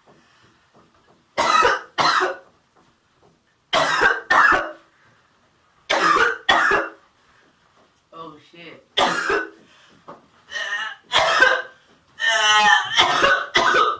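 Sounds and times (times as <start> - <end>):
person fake-coughing: 1.4 - 2.4, 3.7 - 4.8, 5.9 - 7.0, 9.0 - 9.6, 10.7 - 13.9.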